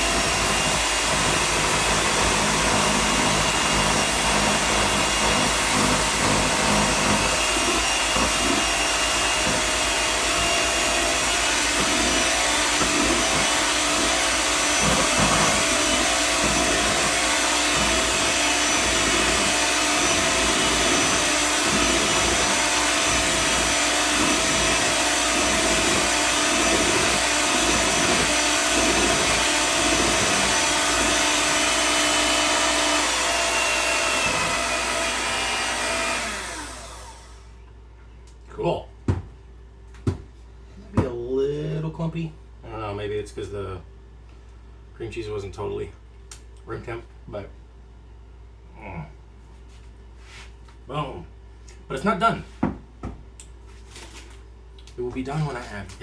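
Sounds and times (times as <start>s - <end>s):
electric hand mixer whirring: 0.0s - 37.5s.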